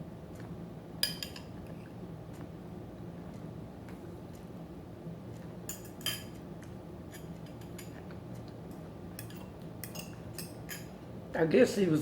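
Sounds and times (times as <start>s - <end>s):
steady low hum: 0.0s - 12.0s
cutlery clinking on plate: 5.7s - 6.4s, 9.2s - 11.0s.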